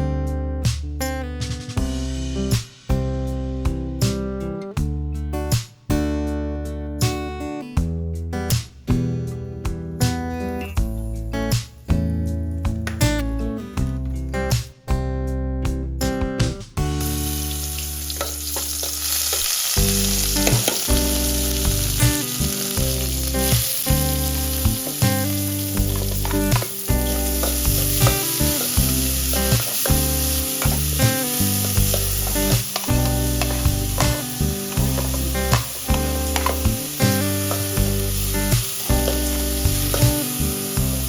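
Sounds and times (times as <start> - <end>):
food sizzling in hot oil: 17.0 - 41.0.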